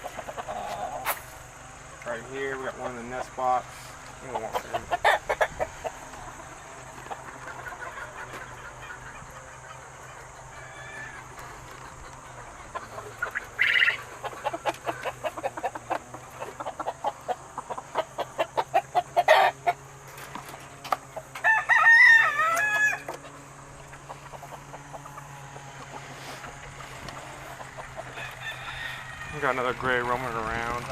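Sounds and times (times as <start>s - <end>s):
chickens clucking: 0.0s - 30.9s
rooster crowing: 10.5s - 11.4s, 21.3s - 23.2s, 28.0s - 29.9s.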